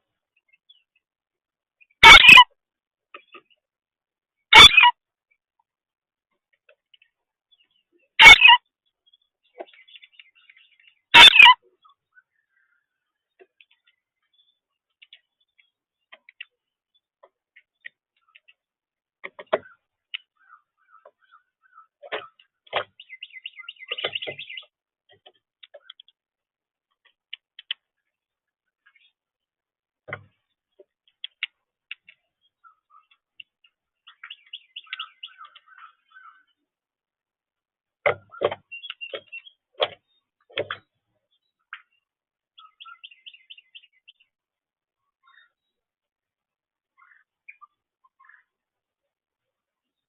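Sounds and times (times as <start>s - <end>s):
birds chirping: 0.0s - 50.0s
birds twittering: 6.7s - 26.2s, 27.4s - 29.3s, 30.1s - 36.8s, 38.0s - 44.4s, 45.0s - 45.8s, 46.9s - 48.6s
birds pecking taps: 23.8s - 26.2s, 34.1s - 35.9s, 38.0s - 40.9s.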